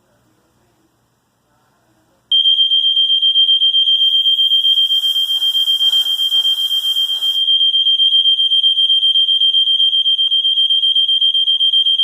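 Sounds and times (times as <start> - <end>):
high-pitched fluttering alarm tone: 2.6 - 7.9
hiss: 4.0 - 7.4.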